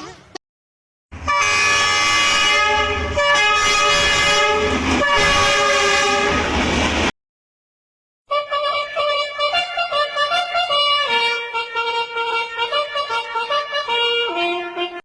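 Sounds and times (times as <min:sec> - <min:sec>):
train horn chord: 0:01.2 - 0:06.5, 0:08.3 - 0:15.0
moving train noise: 0:01.2 - 0:07.1.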